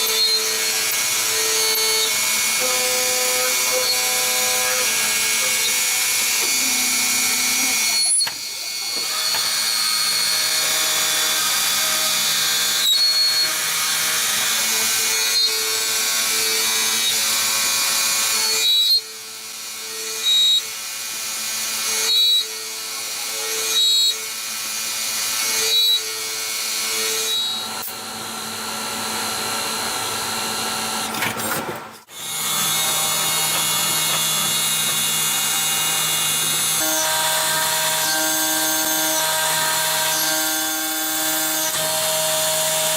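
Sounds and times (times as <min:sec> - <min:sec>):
cutting noise: 0:00.0 - 0:18.9, 0:30.5 - 0:42.9
lathe machine whine: 0:00.0 - 0:31.2, 0:32.0 - 0:42.9.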